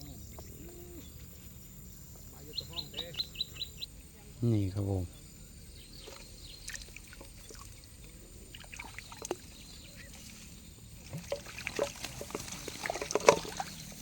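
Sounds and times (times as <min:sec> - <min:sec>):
water splashing and dripping: 0:06.0 - 0:14.0
sharp splash: 0:11.0 - 0:14.0.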